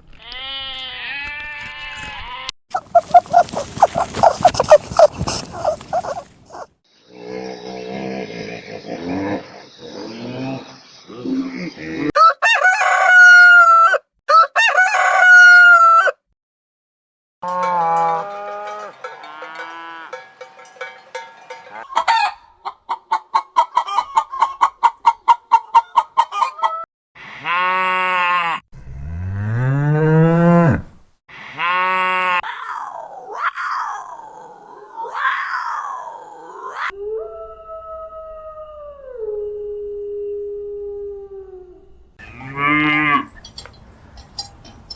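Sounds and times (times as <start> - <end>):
chicken clucks: 2.7 - 6.7, 21.9 - 26.8
chickens crowing: 2.7 - 6.7, 12.1 - 16.1, 21.6 - 26.8
cow mooing: 17.4 - 20.3, 27.4 - 31.0, 42.2 - 43.4.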